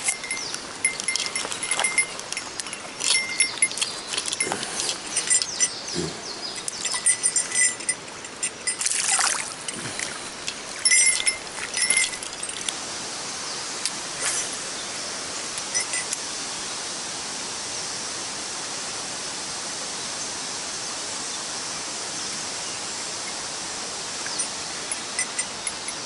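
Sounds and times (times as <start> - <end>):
metallic jingles: 0.0 - 12.8, 15.6 - 16.2, 24.2 - 26.0
stream running: 0.0 - 26.0.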